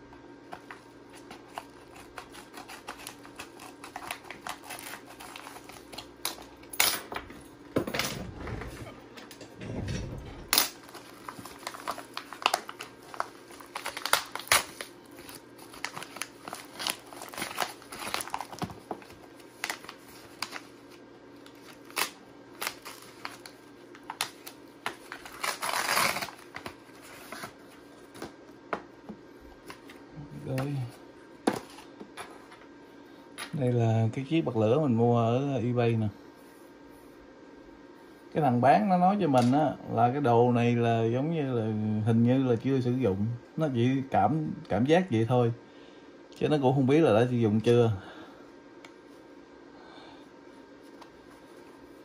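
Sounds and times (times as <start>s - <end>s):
packaging crinkling and rustling: 0.6s - 6.7s, 10.5s - 28.4s.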